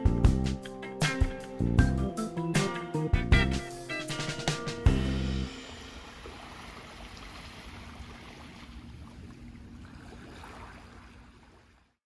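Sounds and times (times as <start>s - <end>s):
waves: 4.0s - 12.0s.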